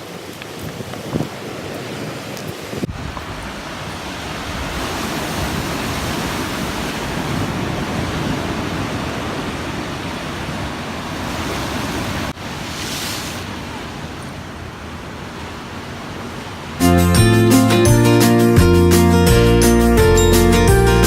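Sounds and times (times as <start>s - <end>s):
wind: 0.0s - 16.8s
sea surf washing in: 0.0s - 21.0s.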